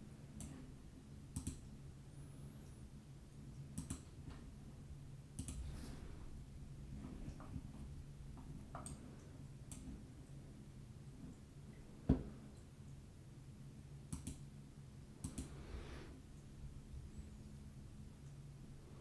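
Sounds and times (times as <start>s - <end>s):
low steady hum: 0.0s - 19.0s
computer mouse and keyboard clicks: 1.4s - 1.6s, 3.8s - 4.0s, 5.4s - 5.6s, 14.1s - 14.4s, 15.2s - 15.5s.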